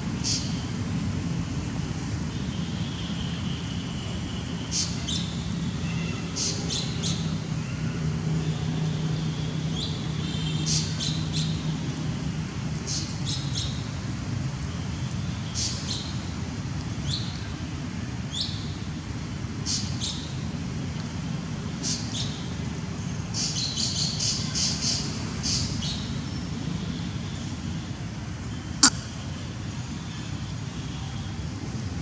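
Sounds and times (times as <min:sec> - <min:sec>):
birds chirping: 0:28.8 - 0:29.4.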